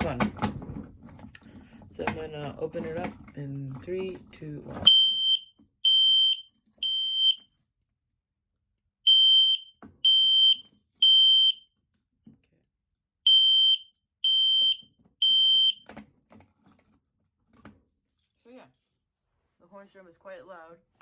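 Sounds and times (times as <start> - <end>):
fire alarm horn blasts: 4.9 - 7.4, 9.1 - 11.6, 13.3 - 15.8.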